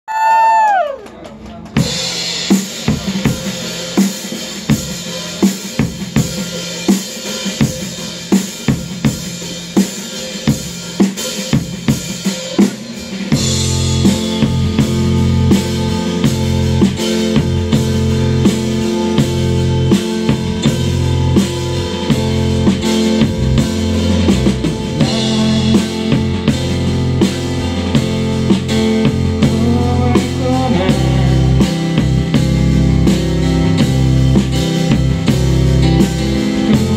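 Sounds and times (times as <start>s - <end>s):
drum kit beat: 0.1s - 36.9s
bass guitar: 1.8s - 36.9s
electric guitar chords: 1.8s - 36.9s.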